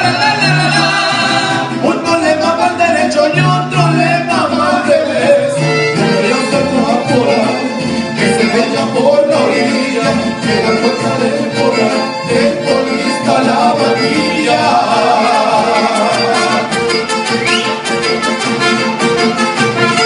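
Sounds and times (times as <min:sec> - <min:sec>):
strummed guitar rhythm: 0:00.0 - 0:20.0
violins playing melody: 0:04.5 - 0:20.0.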